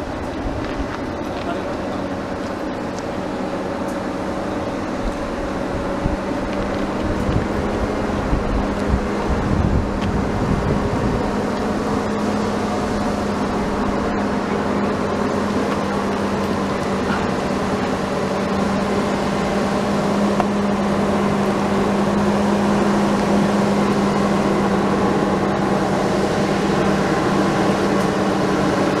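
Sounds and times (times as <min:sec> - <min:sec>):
heavy vehicle engine running: 0:00.0 - 0:29.0.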